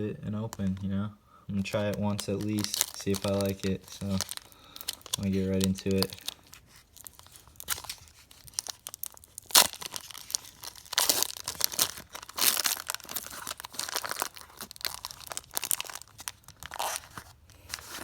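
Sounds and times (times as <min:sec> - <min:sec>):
wrapper crinkling: 0:01.6 - 0:18.0
wrapper tearing: 0:01.6 - 0:18.0.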